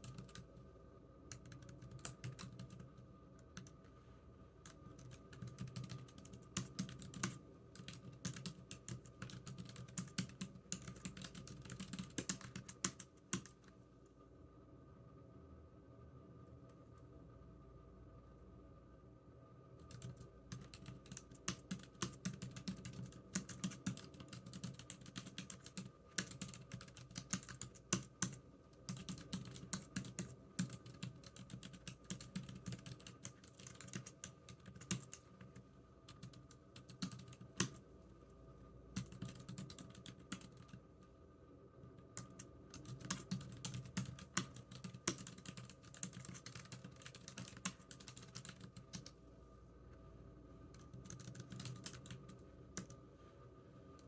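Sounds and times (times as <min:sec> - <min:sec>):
typing on keyboard: 0:00.0 - 0:00.5, 0:01.3 - 0:03.8, 0:04.6 - 0:13.7, 0:19.8 - 0:37.8, 0:38.9 - 0:40.8, 0:42.2 - 0:49.2, 0:50.7 - 0:53.0
faint steady hum: 0:00.0 - 0:54.0.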